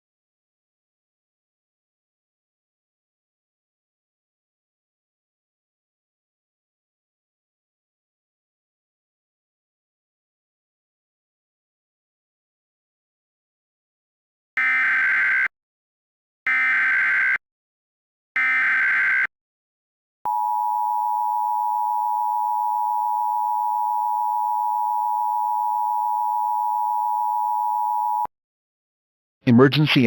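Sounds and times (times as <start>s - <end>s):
steady warning alarm beep: 14.6s - 15.5s, 16.5s - 17.4s, 18.4s - 19.3s, 20.3s - 28.3s.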